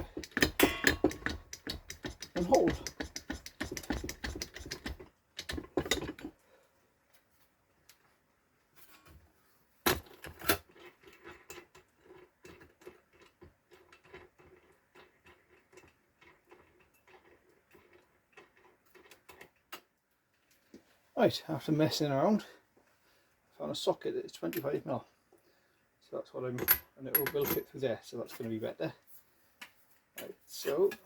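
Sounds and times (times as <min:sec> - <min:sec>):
metallic clicks of tools handled: 0:00.0 - 0:03.4
sharp metal knocks: 0:00.0 - 0:04.8.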